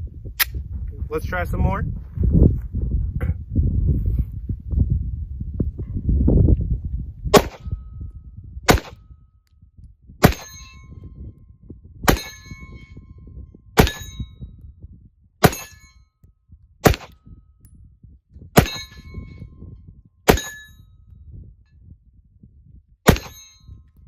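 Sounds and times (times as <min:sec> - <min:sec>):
low rumble: 0:00.0 - 0:24.0
pistol shots: 0:07.3 - 0:07.7, 0:08.7 - 0:09.0, 0:10.2 - 0:10.5, 0:13.8 - 0:14.1, 0:16.8 - 0:17.2, 0:23.1 - 0:23.5
steel target ringing: 0:10.2 - 0:11.0, 0:12.1 - 0:12.9, 0:13.8 - 0:14.4, 0:15.4 - 0:16.0, 0:18.6 - 0:19.4, 0:20.3 - 0:20.8, 0:23.1 - 0:23.8.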